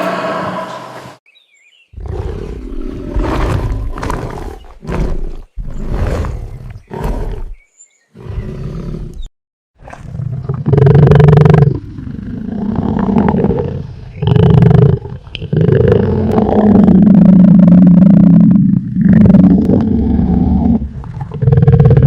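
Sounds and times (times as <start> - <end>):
tiger roaring: 2.0 - 7.6, 9.9 - 22.0.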